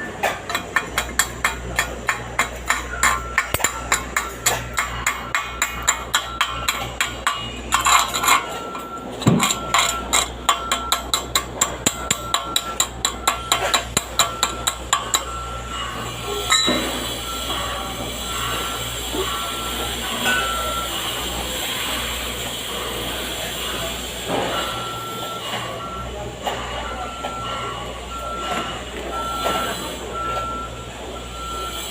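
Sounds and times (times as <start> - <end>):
hammer striking metal: 0.0 - 23.0
constant low hum: 0.0 - 31.9
arc welding hiss and crackle: 15.8 - 25.8.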